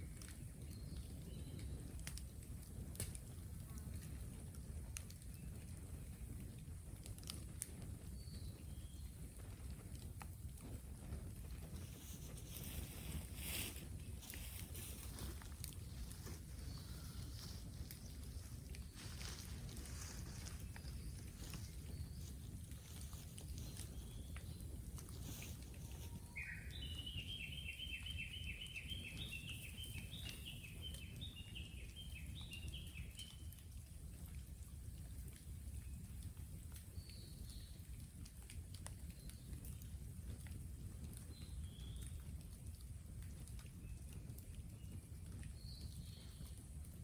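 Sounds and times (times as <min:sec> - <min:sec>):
bonfire smouldering: 0:00.0 - 0:47.0
burning bamboo crackling: 0:00.0 - 0:47.0
wind rumble on microphone: 0:00.0 - 0:47.0
faint pop from fire: 0:01.6 - 0:03.3.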